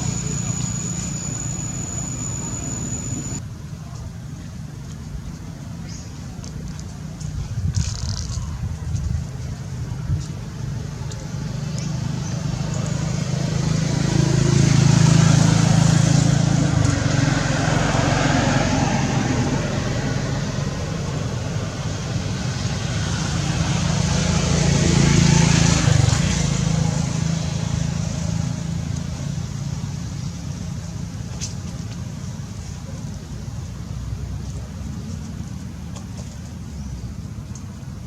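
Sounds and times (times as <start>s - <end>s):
steady traffic rumble: 0.0s - 38.0s
vehicle passing by: 10.8s - 31.0s.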